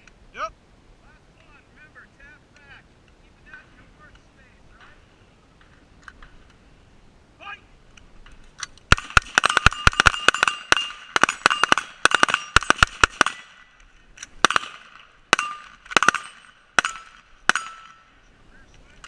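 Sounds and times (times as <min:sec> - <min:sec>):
rifle gunfire: 0:08.9 - 0:18.1.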